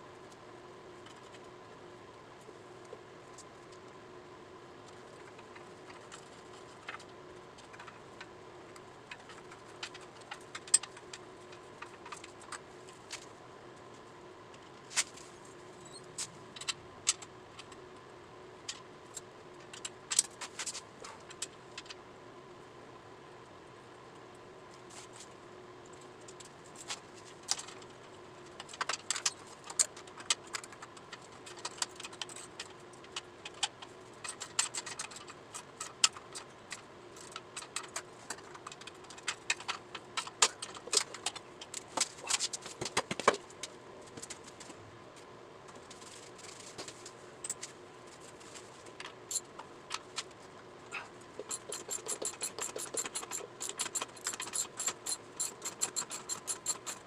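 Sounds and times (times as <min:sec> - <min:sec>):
metal tools clinking and rattling: 0:51.4 - 0:57.0
ratchet wrench clicking: 0:51.4 - 0:57.0.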